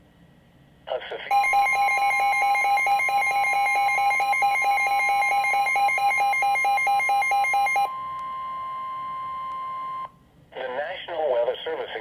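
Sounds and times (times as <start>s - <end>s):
rapid alert beeps: 1.3s - 7.9s
steady alarm tone: 1.3s - 10.1s.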